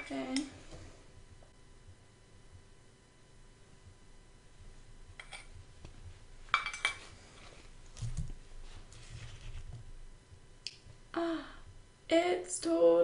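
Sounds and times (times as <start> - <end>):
soft low thumps: 0.5 - 6.6, 7.7 - 12.1
objects clinking on a tabletop: 6.5 - 7.0.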